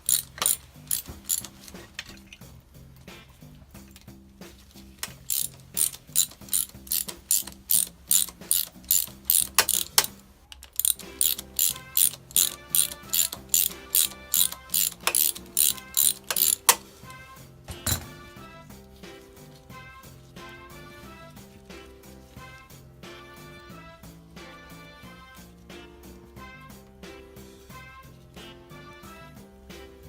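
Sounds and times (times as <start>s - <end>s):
ratchet wrench clicking: 0.0s - 1.8s, 5.0s - 17.2s
background music: 0.0s - 30.0s.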